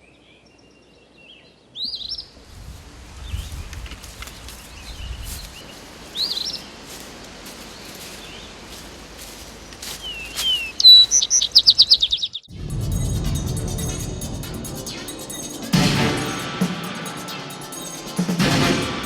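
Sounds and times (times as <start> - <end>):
faint outdoor hiss: 0.0 - 11.9
birds chirping and calling: 4.4 - 12.5
music: 12.5 - 19.0.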